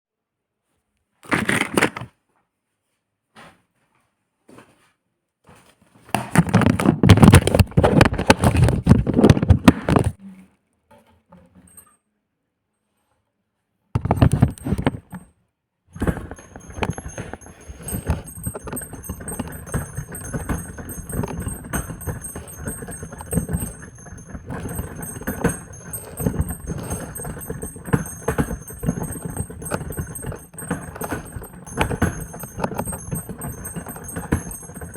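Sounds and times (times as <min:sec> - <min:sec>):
church bells clanging: 0:16.0 - 0:34.9.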